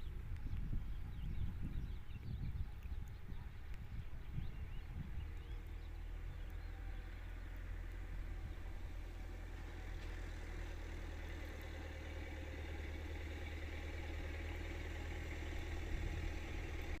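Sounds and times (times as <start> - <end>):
low engine rumble: 0.0 - 17.0.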